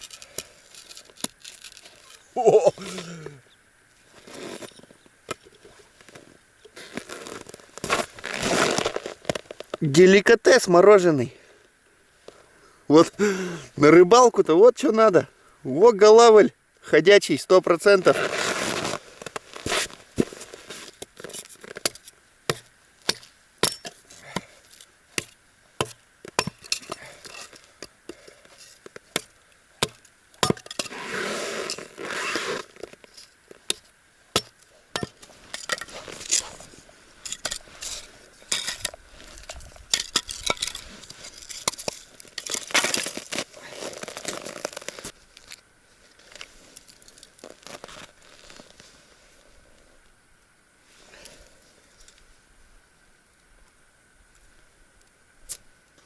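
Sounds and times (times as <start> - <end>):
bark rustling and scraping: 0.0 - 3.0, 26.3 - 45.0
firewood knocking and snapping: 21.7 - 24.5, 25.2 - 28.3, 28.9 - 30.9, 33.7 - 36.6.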